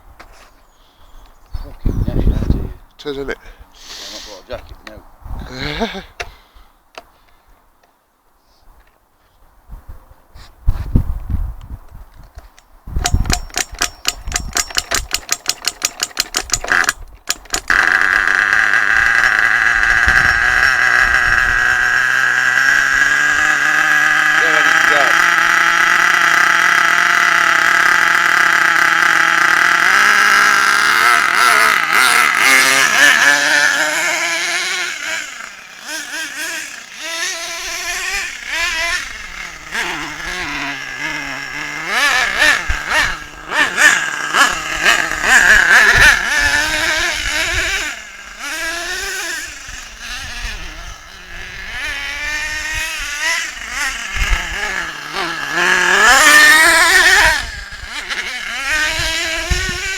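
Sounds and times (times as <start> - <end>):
radio-controlled car engine revving: 15.0 - 59.9.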